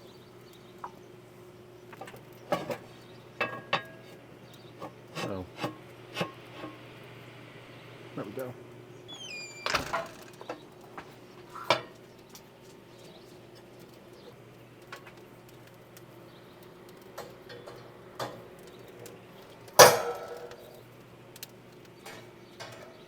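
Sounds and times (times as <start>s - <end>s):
clinks and knocks: 9.6s - 10.6s, 19.8s - 20.7s
ringing metal clank: 19.8s - 20.7s.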